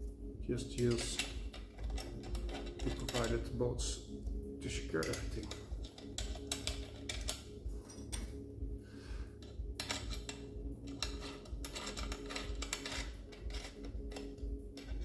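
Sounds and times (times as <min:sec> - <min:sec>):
metallic clicking of tightening tool: 0:00.8 - 0:03.5, 0:04.9 - 0:08.4, 0:09.4 - 0:15.0.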